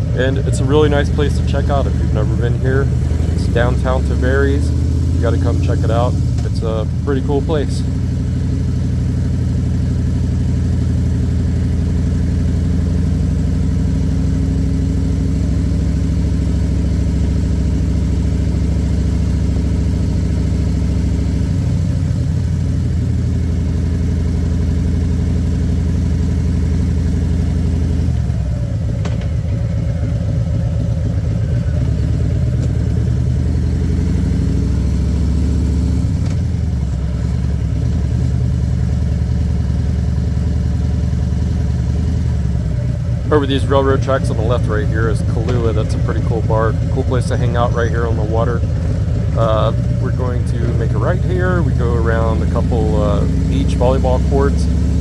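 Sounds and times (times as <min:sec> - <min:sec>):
motorcycle engine running: 0:00.0 - 0:55.0.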